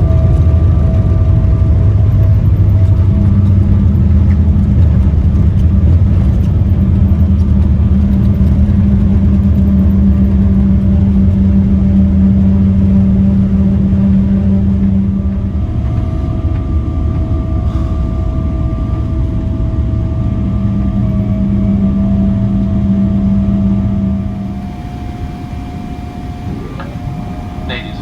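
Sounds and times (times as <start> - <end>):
aircraft cabin engine rumble: 0.0 - 28.0
steady hum: 10.0 - 28.0.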